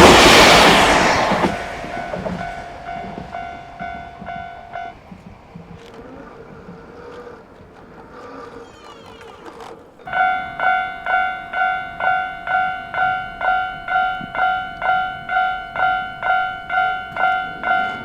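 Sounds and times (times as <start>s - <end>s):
level crossing warning bell: 1.8s - 6.6s, 10.0s - 18.0s.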